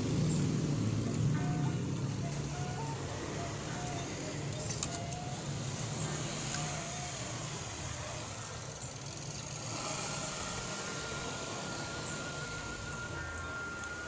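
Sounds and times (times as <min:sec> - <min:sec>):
engine hum: 0:00.0 - 0:14.0
thin steady tone: 0:00.0 - 0:14.0.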